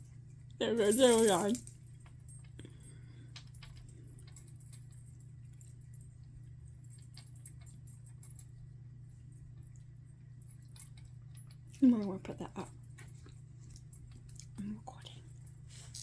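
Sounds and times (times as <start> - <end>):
steady low hum: 0.0 - 16.0
metallic jingling: 0.7 - 2.4.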